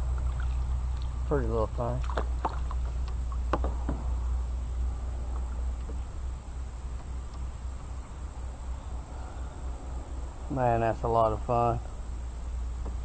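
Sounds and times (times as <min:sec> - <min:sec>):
insects trilling: 0:00.0 - 0:13.0
low rumble: 0:00.0 - 0:13.0
sharp knocks: 0:03.5 - 0:04.2.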